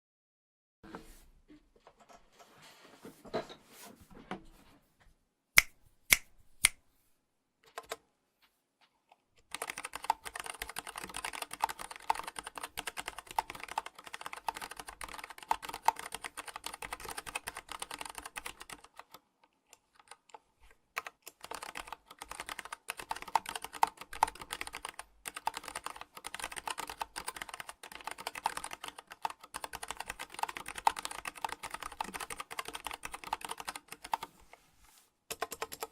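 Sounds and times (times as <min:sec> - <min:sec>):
mechanical keyboard typing: 0:09.4 - 0:34.3, 0:35.3 - 0:35.9.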